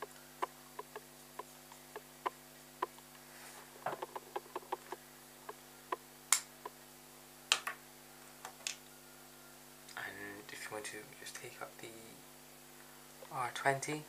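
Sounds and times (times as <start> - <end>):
marker tapping on paper: 0.0 - 3.0, 3.9 - 5.0.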